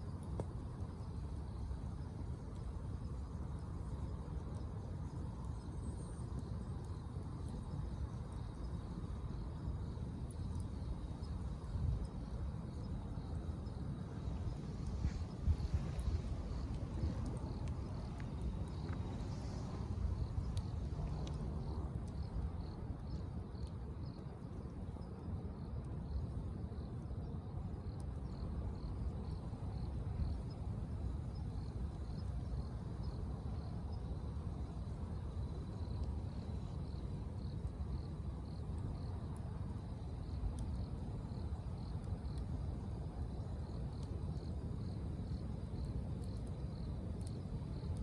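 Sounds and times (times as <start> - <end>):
insect chirping: 0.9 - 24.2, 26.8 - 48.0.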